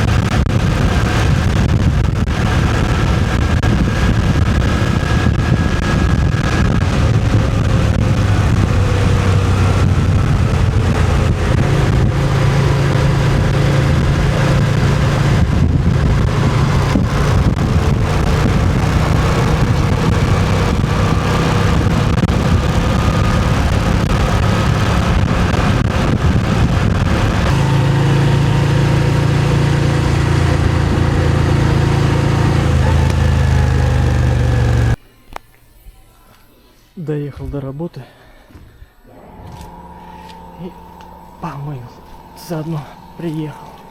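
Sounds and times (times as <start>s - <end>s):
motorcycle engine running: 0.0s - 35.0s, 39.1s - 43.9s
road and wind noise: 0.0s - 35.0s.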